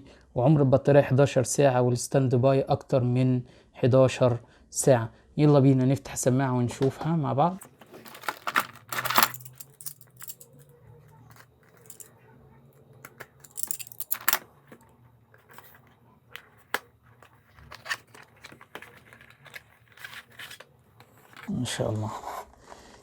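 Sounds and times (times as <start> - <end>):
cardboard packaging rustling: 7.6 - 10.3, 13.4 - 21.5.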